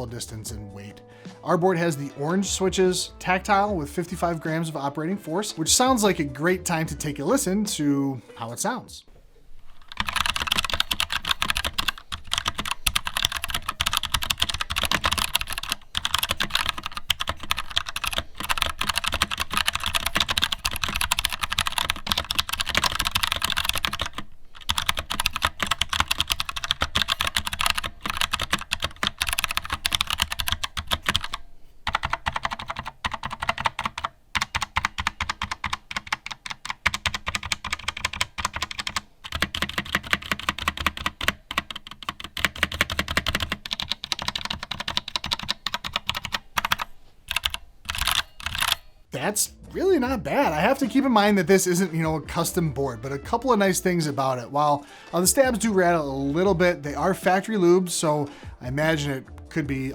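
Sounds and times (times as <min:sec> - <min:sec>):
mechanical keyboard typing: 0:09.9 - 0:48.9.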